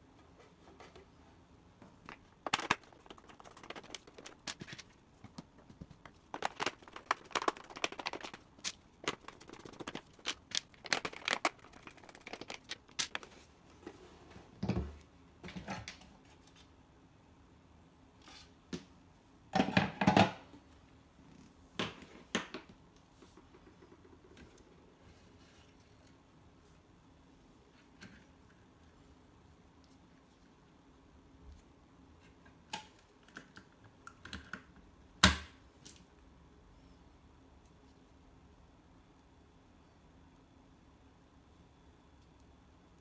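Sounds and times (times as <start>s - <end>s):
plastic parts clicking and scraping: 1.9s - 13.4s.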